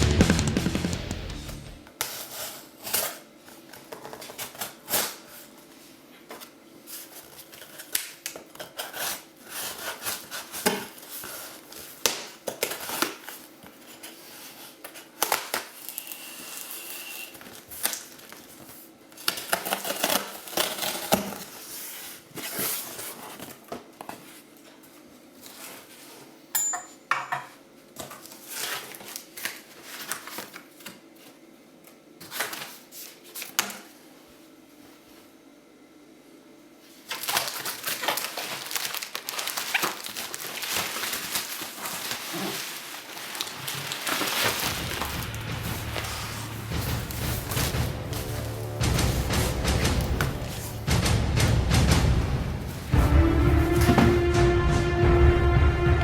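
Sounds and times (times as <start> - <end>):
packaging being handled: 37.1 - 48.3.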